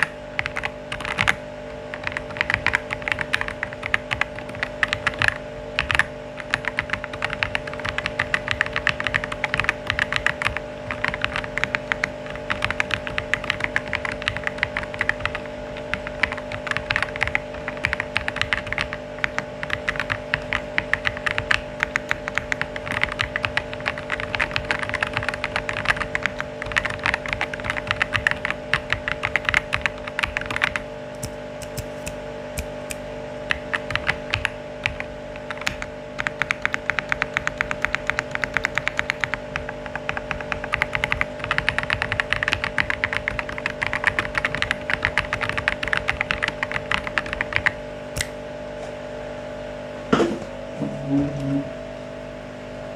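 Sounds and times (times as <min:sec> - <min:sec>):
mechanical keyboard typing: 0:00.0 - 0:30.8, 0:33.5 - 0:47.8
steady low hum: 0:00.0 - 0:52.9
loud knock: 0:50.1 - 0:51.0.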